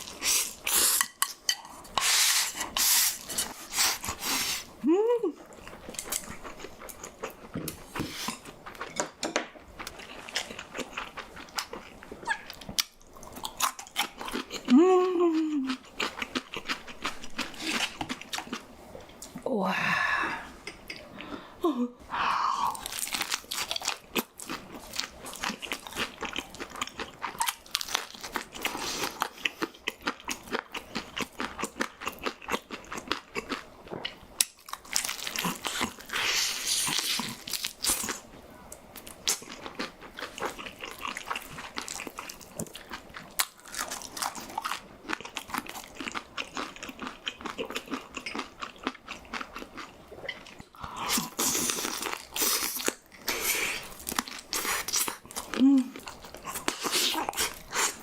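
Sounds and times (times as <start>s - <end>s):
chewing crispy fried food: 5.3s - 9.0s, 9.7s - 19.4s, 22.7s - 58.0s.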